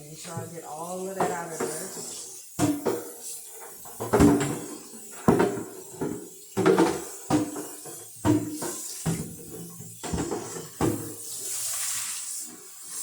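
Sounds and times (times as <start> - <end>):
shelf knocking against sink: 4.0 - 4.7, 5.3 - 11.2.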